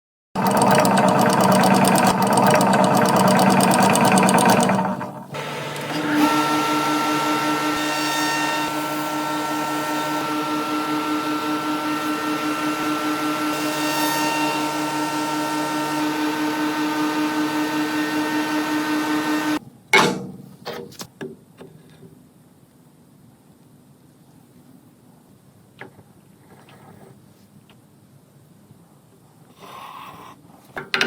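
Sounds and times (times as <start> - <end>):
wood shaper whining: 0.4 - 19.6.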